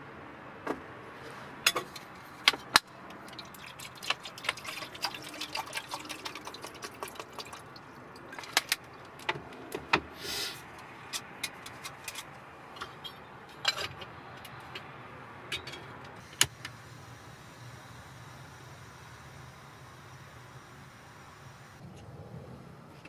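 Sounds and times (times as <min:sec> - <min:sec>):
hissing pour: 0:03.2 - 0:08.6.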